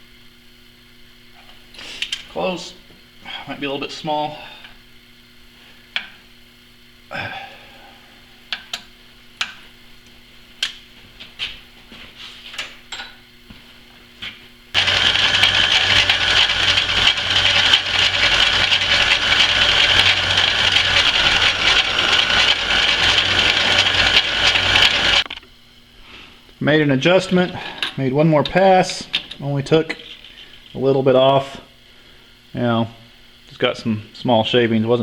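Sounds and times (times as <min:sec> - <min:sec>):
metalworking lathe running: 0:14.8 - 0:25.2.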